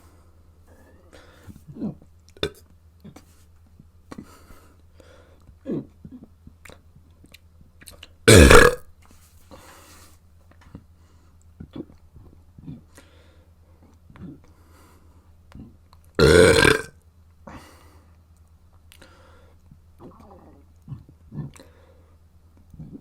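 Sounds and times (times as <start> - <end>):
person burping: 8.3 - 8.8, 16.2 - 16.9.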